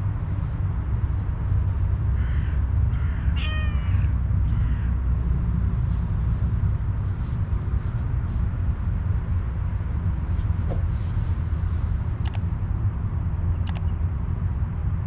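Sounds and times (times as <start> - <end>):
low background rumble: 0.0 - 15.0
faint short ticks: 13.6 - 13.9.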